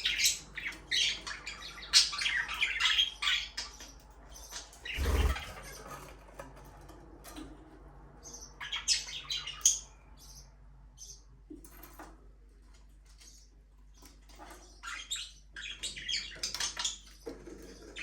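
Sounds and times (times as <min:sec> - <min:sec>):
budgerigars chirping: 0:00.0 - 0:05.8.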